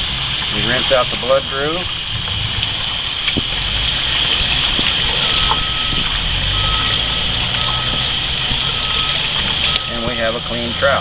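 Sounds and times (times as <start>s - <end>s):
water running: 0.0s - 11.0s
vehicle reversing beeper: 5.1s - 11.0s.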